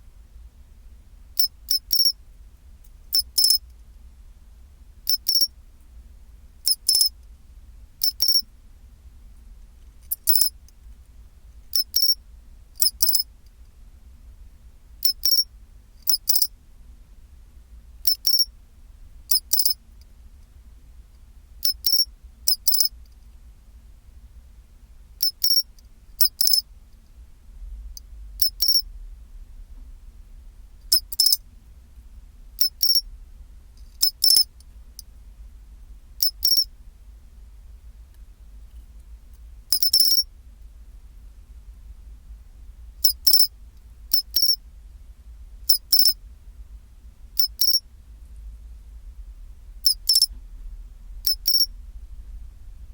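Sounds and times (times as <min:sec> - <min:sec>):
faint low hum: 0:00.0 - 0:52.9
cricket chirping: 0:01.4 - 0:02.2, 0:03.1 - 0:03.6, 0:05.0 - 0:05.6, 0:06.6 - 0:07.2, 0:08.0 - 0:08.5, 0:10.0 - 0:10.6, 0:11.7 - 0:12.2, 0:12.8 - 0:13.3, 0:15.0 - 0:16.5, 0:18.0 - 0:18.5, 0:19.3 - 0:19.8, 0:21.6 - 0:22.9, 0:25.2 - 0:26.7, 0:28.4 - 0:28.8, 0:30.9 - 0:31.4, 0:32.6 - 0:33.1, 0:34.0 - 0:34.5, 0:36.2 - 0:36.7, 0:39.7 - 0:40.3, 0:43.0 - 0:43.5, 0:44.1 - 0:44.6, 0:45.7 - 0:46.2, 0:47.4 - 0:47.8, 0:49.8 - 0:50.3, 0:51.2 - 0:51.7.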